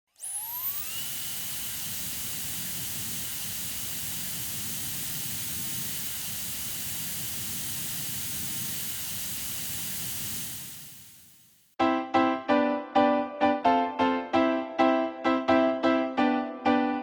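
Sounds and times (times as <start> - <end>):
hair dryer running: 0.1 - 11.7.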